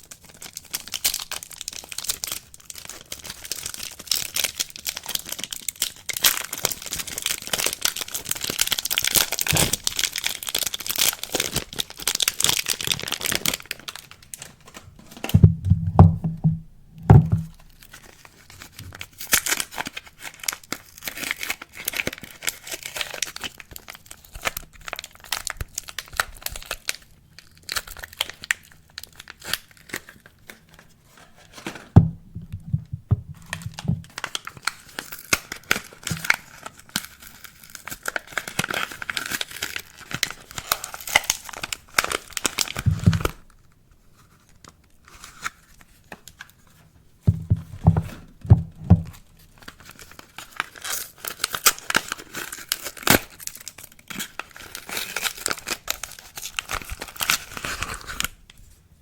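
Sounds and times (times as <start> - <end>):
soap wrapping crinkling and tearing: 0.0 - 15.8, 17.5 - 58.8
soft handling thumps: 15.0 - 17.7, 32.0 - 34.1, 42.9 - 43.3, 47.3 - 49.2.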